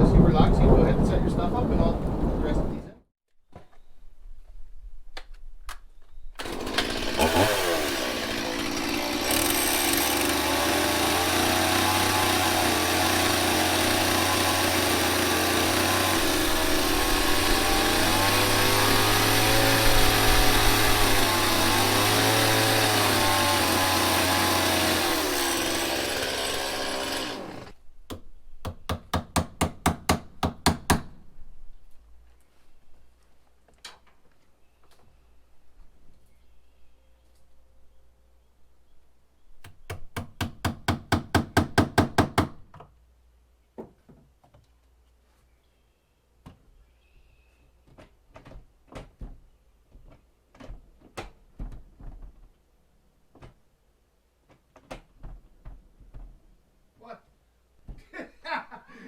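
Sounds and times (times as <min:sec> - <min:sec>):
power drill driving a screw: 0:06.4 - 0:27.8.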